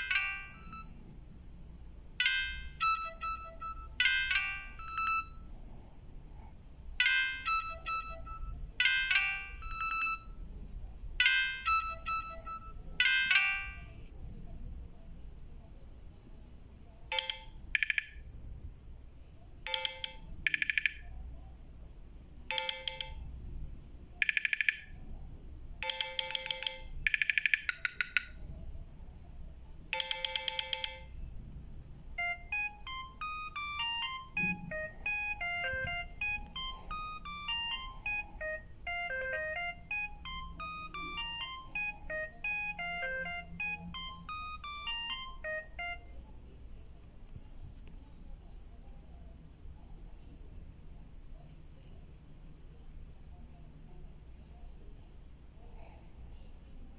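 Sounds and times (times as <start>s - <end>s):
electronic ringtone melody: 0.0s - 1.0s, 2.2s - 5.5s, 7.0s - 10.5s, 11.2s - 14.0s, 17.1s - 18.2s, 19.7s - 21.0s, 22.5s - 23.2s, 24.2s - 24.9s, 25.8s - 28.3s, 30.0s - 31.1s, 32.1s - 46.2s
buzzy beeping ringtone: 0.0s - 1.1s, 2.2s - 5.6s, 7.0s - 10.5s, 11.2s - 14.0s, 19.7s - 21.0s, 24.2s - 25.0s, 25.8s - 28.4s, 32.2s - 46.2s.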